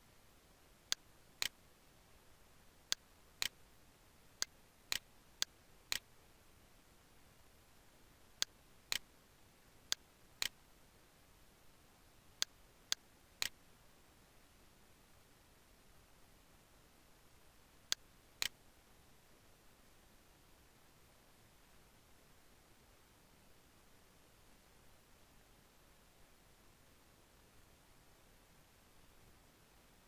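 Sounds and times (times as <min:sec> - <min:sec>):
sharp clicks in pairs: 0:00.9 - 0:01.6, 0:02.9 - 0:03.6, 0:04.4 - 0:06.1, 0:08.4 - 0:09.1, 0:09.9 - 0:10.6, 0:12.4 - 0:13.6, 0:17.9 - 0:18.6.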